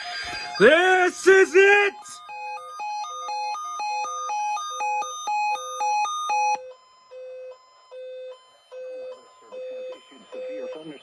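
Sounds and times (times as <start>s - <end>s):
weather radio alarm beeping: 0.0s - 2.2s.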